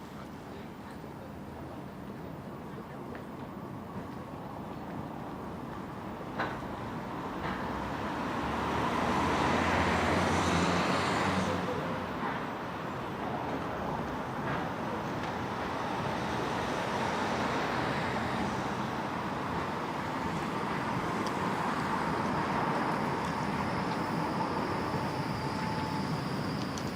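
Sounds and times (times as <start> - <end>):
steady traffic noise: 0.0 - 26.9
vehicle engine hum passing: 7.8 - 12.4.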